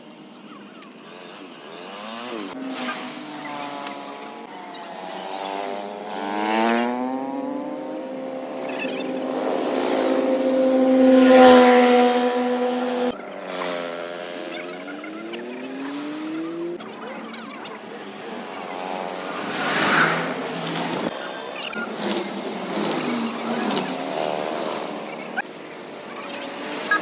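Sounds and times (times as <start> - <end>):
vehicles passing on road: 1.0 - 27.0.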